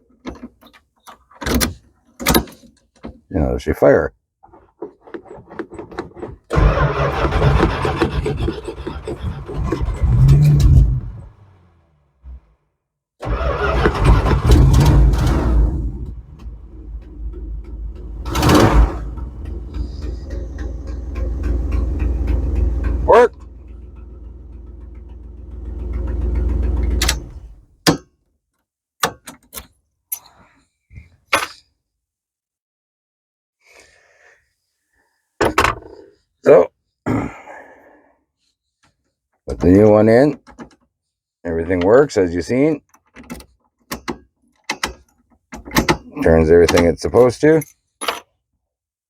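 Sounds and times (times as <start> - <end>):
starter motor cranking engine: 6.5 - 12.4, 13.2 - 27.8
ignition key clicks: 26.1 - 27.6.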